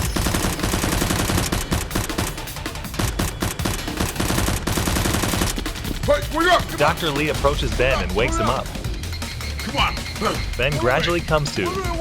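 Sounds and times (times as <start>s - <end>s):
automatic gunfire: 0.0s - 5.9s.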